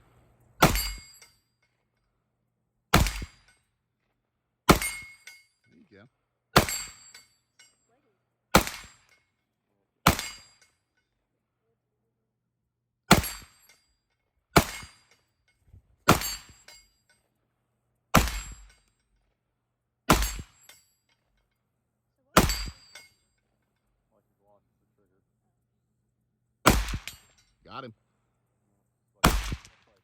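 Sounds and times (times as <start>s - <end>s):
rifle shots: 2.9s - 3.4s, 8.6s - 9.0s, 10.0s - 10.4s, 18.2s - 18.7s, 26.6s - 27.3s, 29.2s - 30.0s.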